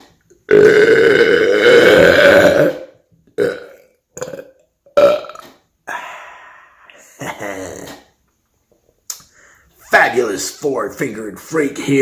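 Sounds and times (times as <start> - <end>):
man burping: 0.5 - 8.2.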